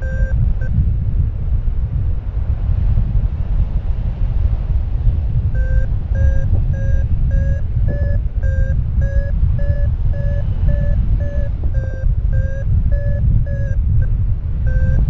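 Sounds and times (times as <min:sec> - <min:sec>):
two-tone electronic beeps: 0:00.0 - 0:00.8, 0:05.6 - 0:15.0
wind rumble on microphone: 0:00.0 - 0:15.0.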